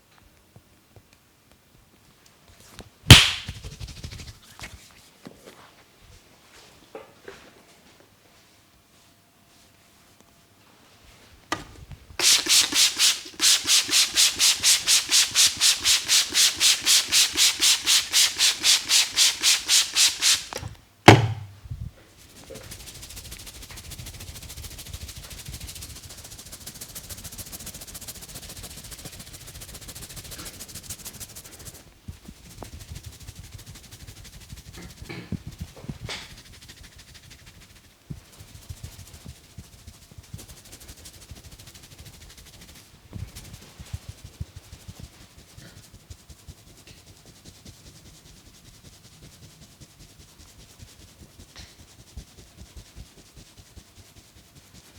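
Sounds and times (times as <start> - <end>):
sharp thump: 3.1 - 3.6, 18.5 - 21.6
hands rubbing skin: 3.1 - 5.0, 12.2 - 21.5, 22.3 - 31.8, 32.6 - 54.9.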